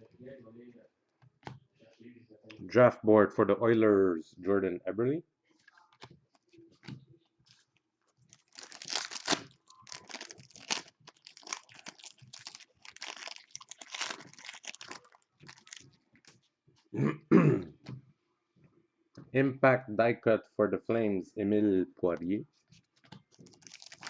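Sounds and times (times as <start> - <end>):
foil wrappers crinkling and tearing: 8.3 - 16.4, 23.3 - 24.0.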